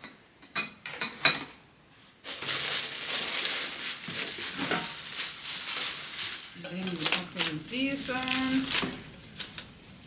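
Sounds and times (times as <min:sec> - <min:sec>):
packaging crinkling and rustling: 0:02.2 - 0:10.0.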